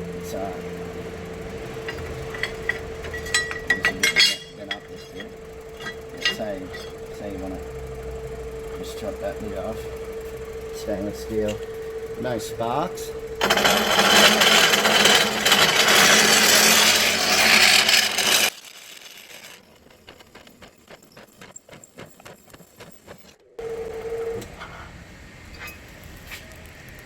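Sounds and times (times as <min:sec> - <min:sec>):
low motor hum: 0:00.0 - 0:18.5
cold saw cutting steel: 0:01.3 - 0:07.4, 0:10.8 - 0:23.5.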